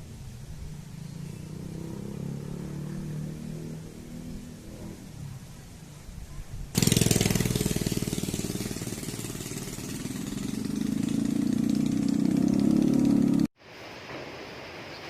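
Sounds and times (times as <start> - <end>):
engine running with fast pulsing: 6.7 - 13.5.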